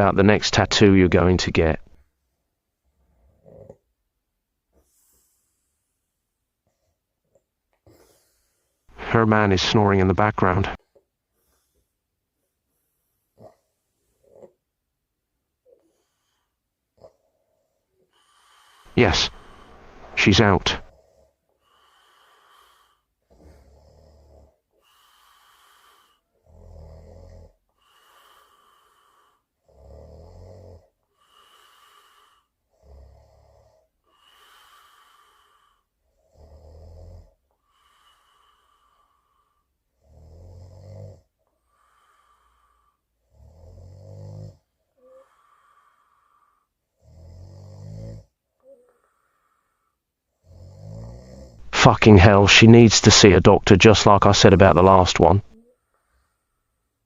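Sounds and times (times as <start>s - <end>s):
rough rattling snore: 3.0s - 3.9s, 20.9s - 49.7s, 50.3s - 51.6s
airy out-breath: 18.2s - 20.2s.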